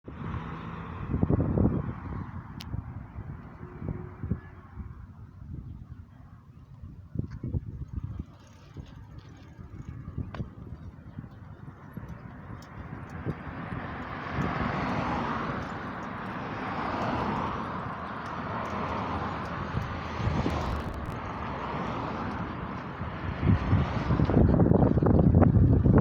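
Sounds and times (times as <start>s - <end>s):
road traffic rushing hiss: 13.2s - 24.5s.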